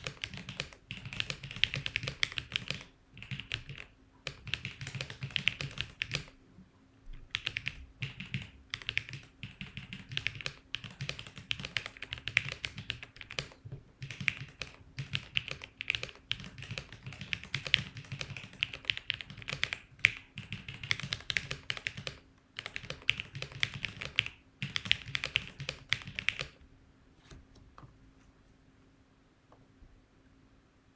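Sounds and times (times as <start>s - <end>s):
mechanical keyboard typing: 0.0s - 6.4s, 7.3s - 26.6s.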